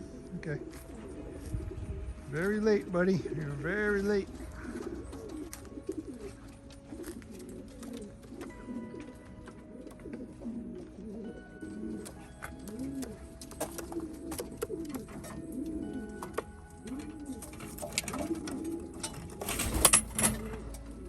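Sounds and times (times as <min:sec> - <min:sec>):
pigeons cooing: 0:00.0 - 0:21.0.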